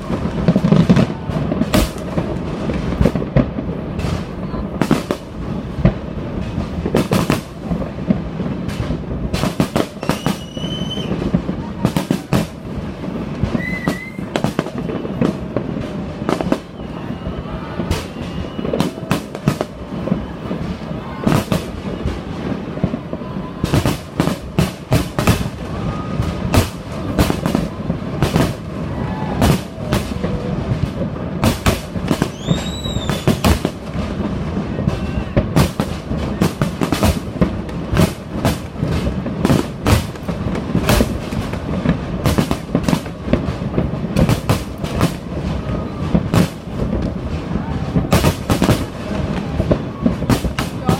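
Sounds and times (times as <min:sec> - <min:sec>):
fireworks bangs and crackles: 0:00.0 - 0:50.9
high whistle: 0:10.0 - 0:11.2, 0:13.5 - 0:15.2, 0:16.6 - 0:19.1, 0:32.2 - 0:33.4.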